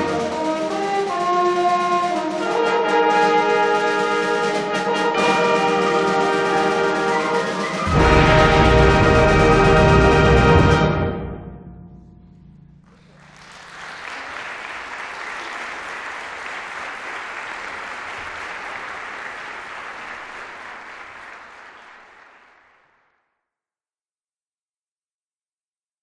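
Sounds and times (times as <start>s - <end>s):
concert wind band chord: 0.0s - 12.7s
audience applauding: 5.4s - 9.2s, 12.8s - 23.2s.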